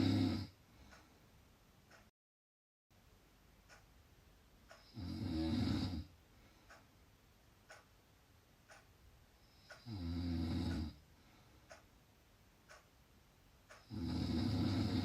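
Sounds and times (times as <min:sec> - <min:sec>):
person snoring: 0:00.0 - 0:00.6, 0:04.8 - 0:06.1, 0:09.6 - 0:11.0, 0:13.8 - 0:15.0
faint ticks: 0:00.8 - 0:01.2, 0:01.9 - 0:02.1, 0:03.6 - 0:04.0, 0:04.6 - 0:07.0, 0:07.6 - 0:08.0, 0:08.6 - 0:12.0, 0:12.6 - 0:13.0, 0:13.6 - 0:15.0.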